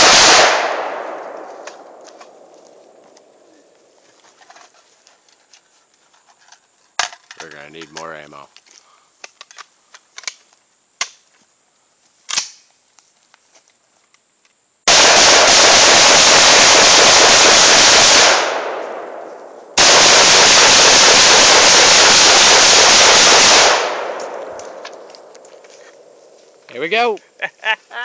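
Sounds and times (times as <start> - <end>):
rapid gunfire: 0.0 - 1.1, 14.9 - 18.8, 19.8 - 24.6.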